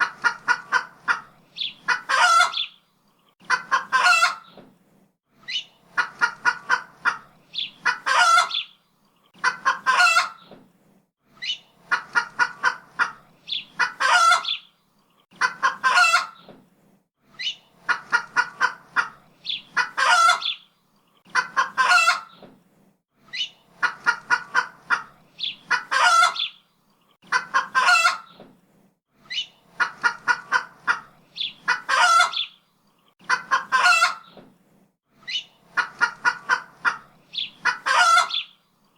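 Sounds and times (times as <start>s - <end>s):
chicken clucking: 0.0s - 2.8s, 3.4s - 4.6s, 5.5s - 10.6s, 11.4s - 14.7s, 15.3s - 16.6s, 17.4s - 22.5s, 23.3s - 26.6s, 27.2s - 28.5s, 29.3s - 34.5s, 35.3s - 38.6s
chicken squawk: 0.0s - 2.8s, 3.5s - 4.6s, 5.5s - 8.8s, 9.4s - 10.5s, 11.4s - 14.7s, 15.4s - 16.5s, 17.4s - 20.7s, 21.3s - 22.4s, 23.3s - 26.6s, 27.3s - 28.4s, 29.3s - 32.6s, 33.2s - 34.4s, 35.2s - 38.6s.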